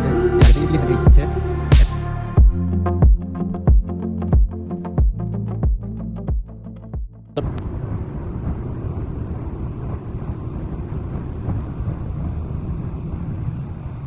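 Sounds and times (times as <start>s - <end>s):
music with thumping beat: 0.4s - 7.2s.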